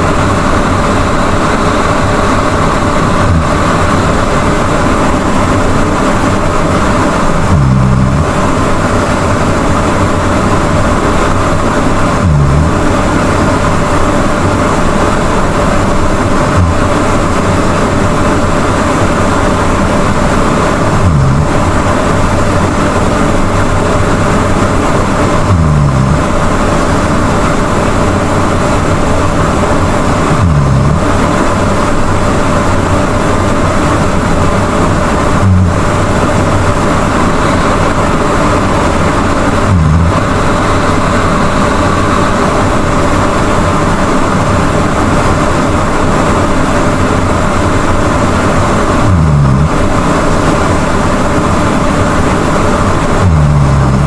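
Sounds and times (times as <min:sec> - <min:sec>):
person snoring: 0:07.4 - 0:08.5, 0:12.2 - 0:13.0, 0:20.9 - 0:21.7, 0:25.4 - 0:26.4, 0:30.3 - 0:31.2, 0:35.4 - 0:35.9, 0:39.6 - 0:41.2, 0:49.0 - 0:49.8, 0:53.2 - 0:54.0.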